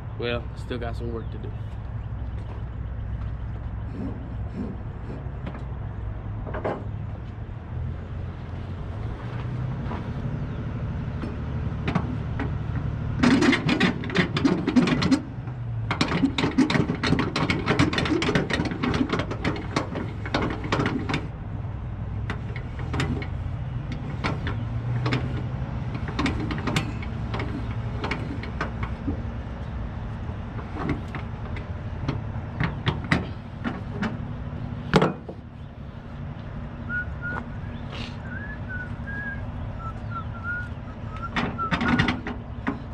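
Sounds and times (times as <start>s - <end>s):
truck diesel engine idling: 9.8s - 42.9s
metallic clicking and rattling: 11.2s - 15.3s, 15.9s - 21.3s, 41.2s - 42.9s.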